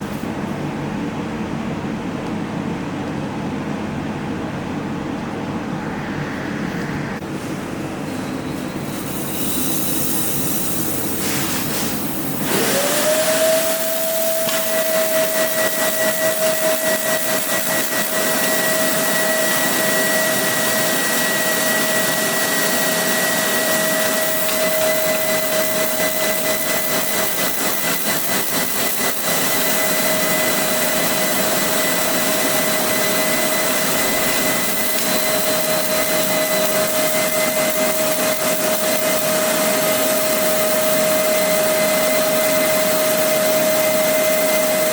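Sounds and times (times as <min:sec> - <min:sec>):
machine whine sweeping up: 0:03.7 - 0:44.9
drilling machine whirring: 0:12.0 - 0:44.9.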